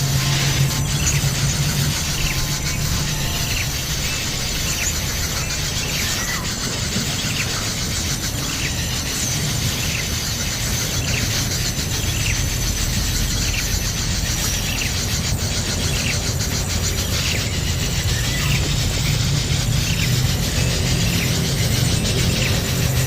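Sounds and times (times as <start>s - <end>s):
low rumble: 0.0s - 8.3s
bird chirps: 0.0s - 23.0s
insect buzz: 0.0s - 23.0s.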